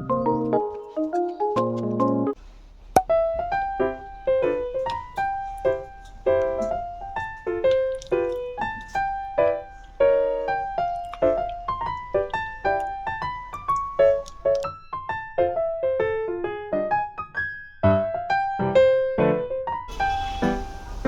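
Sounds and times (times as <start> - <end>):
keyboard chords: 0.0 - 2.4, 3.0 - 14.6
light keyboard tune: 0.0 - 2.4, 3.1 - 14.7.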